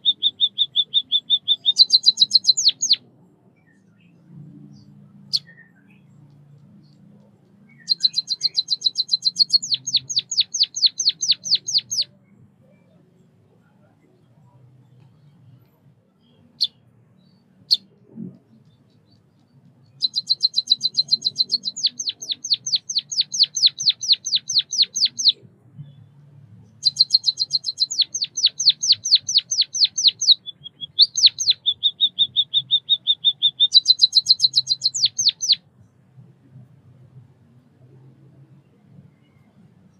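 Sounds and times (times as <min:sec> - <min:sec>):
small bird singing high notes: 0:00.0 - 0:03.0, 0:07.7 - 0:12.1, 0:20.0 - 0:25.4, 0:26.8 - 0:35.6.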